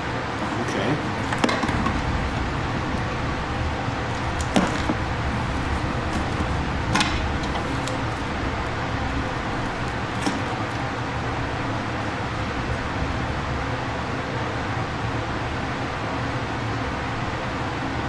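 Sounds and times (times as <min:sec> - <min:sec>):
steady background hum: 0:00.0 - 0:18.0
clicks and knocks of hand work: 0:00.4 - 0:11.0.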